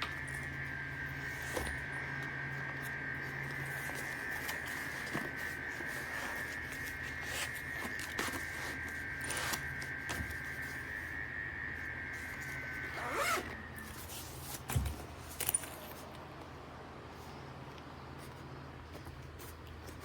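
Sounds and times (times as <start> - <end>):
steady high whine: 0.0 - 18.9
zipper on padded case: 12.9 - 13.5.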